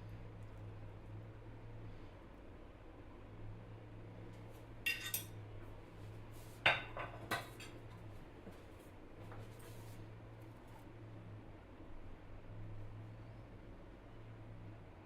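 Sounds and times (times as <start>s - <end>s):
metal utensils clinking on dishes: 4.9s - 5.3s.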